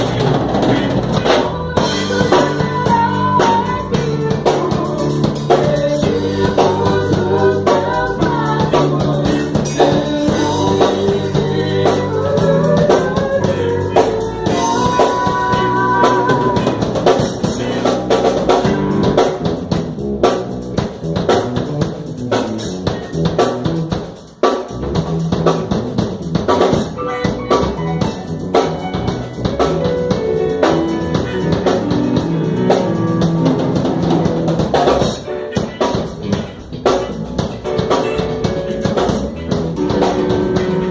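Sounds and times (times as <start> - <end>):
drum rimshots: 0.0 - 40.9
live band playing a hymn: 0.0 - 40.9
woman singing: 1.2 - 17.0.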